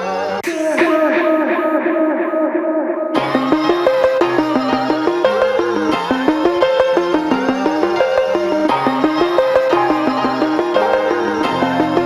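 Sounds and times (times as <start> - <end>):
melody of gliding notes: 3.2 - 12.0.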